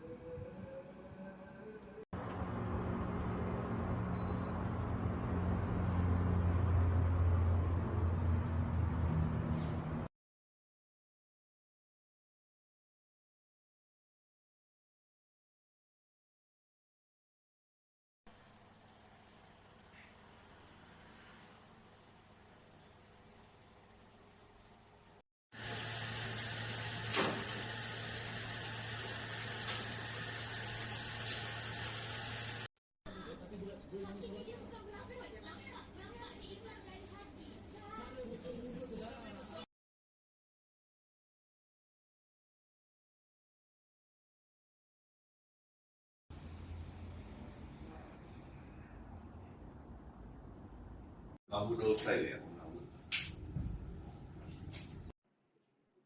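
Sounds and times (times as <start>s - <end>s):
shower water running: 25.6s - 32.7s.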